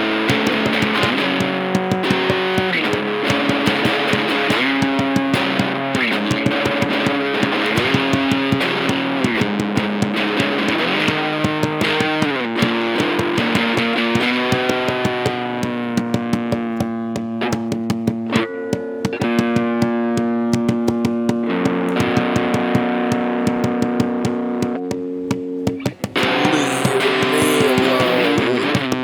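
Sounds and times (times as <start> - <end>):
hands banging on tabletop: 14.3 - 21.5
guitar playing chords: 26.2 - 28.9.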